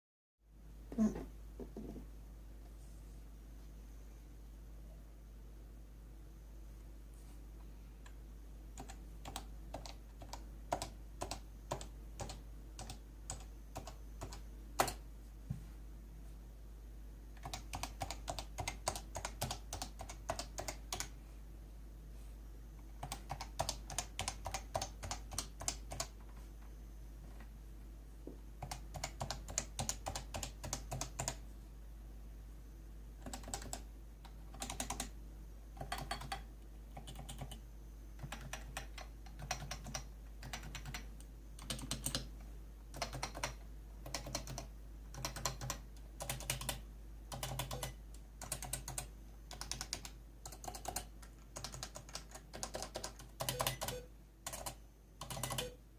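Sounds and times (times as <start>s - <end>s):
steady low hum: 0.5s - 55.9s
soft keyboard keystrokes: 8.8s - 15.0s, 23.0s - 26.4s, 33.2s - 35.1s, 38.2s - 42.3s, 42.9s - 55.8s.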